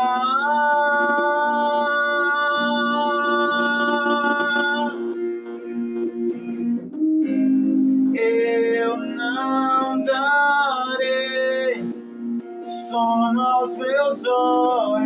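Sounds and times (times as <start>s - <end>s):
person singing long note: 0.0s - 5.2s
acoustic guitar: 0.0s - 15.0s.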